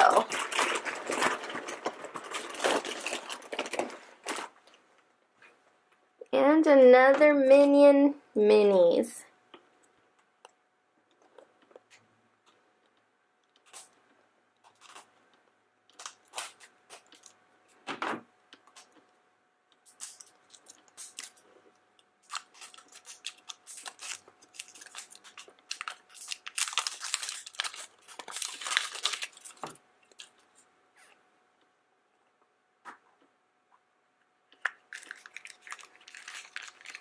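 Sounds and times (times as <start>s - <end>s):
plastic wrapper tearing and crinkling: 0.0s - 4.8s, 14.6s - 15.1s, 15.9s - 17.4s, 19.8s - 21.5s, 22.2s - 30.5s, 34.6s - 37.0s.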